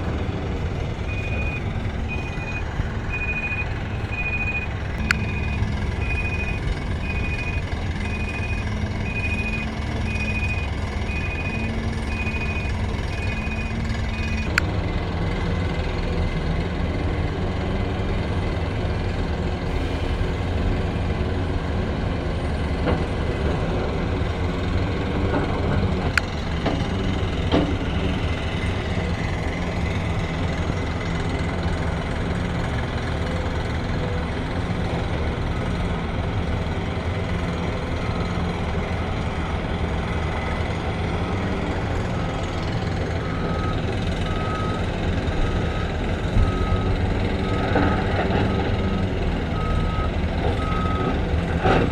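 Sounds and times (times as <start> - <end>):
diesel engine drone: 0.0 - 51.9
reversing alarm beeping: 0.8 - 14.6, 19.7 - 21.9, 42.1 - 51.1.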